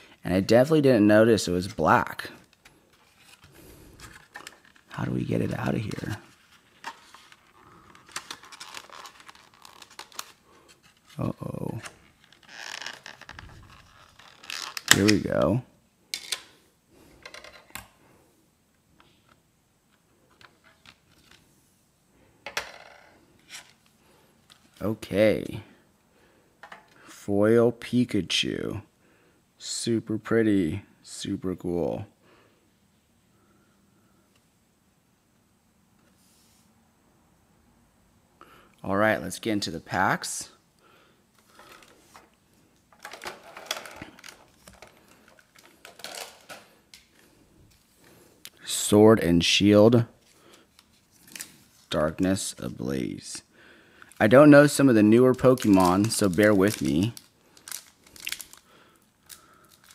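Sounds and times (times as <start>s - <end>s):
foil wrapper crinkling and tearing: 6.8s - 10.4s, 11.0s - 15.2s, 54.0s - 59.9s
light ticks and clicks of packaging: 55.3s - 58.6s, 59.2s - 59.9s.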